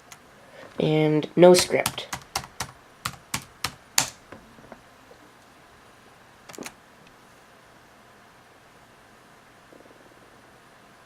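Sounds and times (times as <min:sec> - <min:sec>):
laptop keyboard typing clicks: 0:01.6 - 0:04.2, 0:06.5 - 0:06.8.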